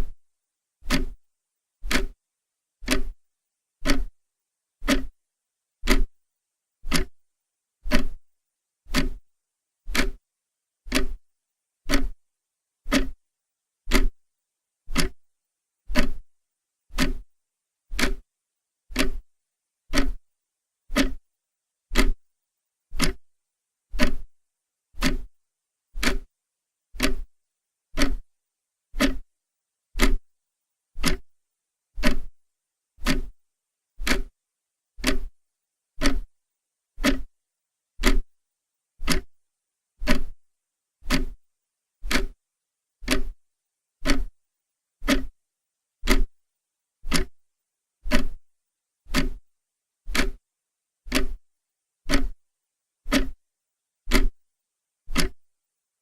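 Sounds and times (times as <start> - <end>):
clock ticking: 0.8 - 1.2, 1.8 - 2.2, 2.8 - 3.2, 3.8 - 4.2, 4.8 - 5.1, 5.8 - 6.1, 6.9 - 7.2, 7.9 - 8.2, 8.9 - 9.2, 9.9 - 10.2, 10.9 - 11.2, 11.9 - 12.2, 12.9 - 13.2, 13.9 - 14.2, 14.9 - 15.2, 15.9 - 16.2, 16.9 - 17.2, 17.9 - 18.2, 18.9 - 19.2, 19.9 - 20.2, 20.9 - 21.2, 21.9 - 22.2, 23.0 - 23.2, 24.0 - 24.3, 25.0 - 25.3, 26.0 - 26.3, 27.0 - 27.3, 28.0 - 28.3, 29.0 - 29.2, 30.0 - 30.2, 31.0 - 31.3, 32.0 - 32.3, 33.0 - 33.3, 34.0 - 34.3, 35.0 - 35.4, 36.0 - 36.3, 37.0 - 37.3, 38.0 - 38.3, 39.0 - 39.4, 40.0 - 40.4, 41.0 - 41.4, 42.0 - 42.4, 43.0 - 43.4, 44.0 - 44.4, 45.0 - 45.3, 46.0 - 46.3, 47.1 - 47.4, 48.1 - 48.4, 49.1 - 49.4, 50.1 - 50.4, 51.1 - 51.4, 52.1 - 52.4, 53.1 - 53.4, 54.1 - 54.4, 55.1 - 55.5.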